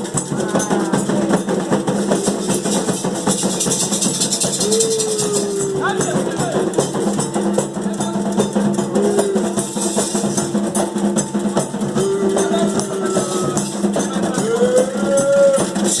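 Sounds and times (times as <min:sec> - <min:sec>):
sung chant: 0:00.0 - 0:02.8, 0:11.7 - 0:16.0
drums and shaken percussion: 0:00.0 - 0:16.0.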